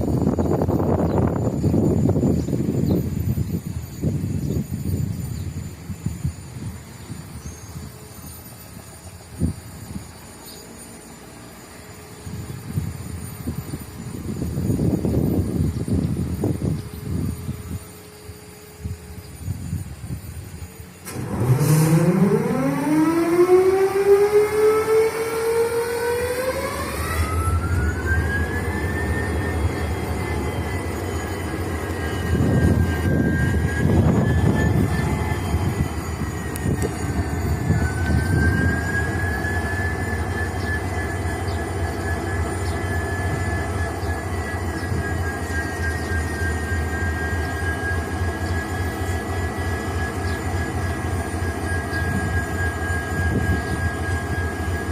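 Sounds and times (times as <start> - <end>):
diesel locomotive engine cranking: 0.0 - 54.9
high-pitched whine: 0.0 - 54.9
locomotive engine idling: 26.1 - 54.9.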